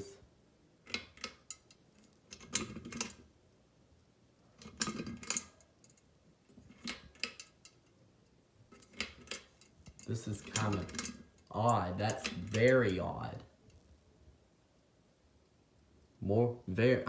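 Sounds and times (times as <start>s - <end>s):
pull-chain switch clicking: 4.6s - 6.0s, 6.7s - 7.6s, 8.8s - 13.0s
chain and glass globe rattling: 8.8s - 13.0s.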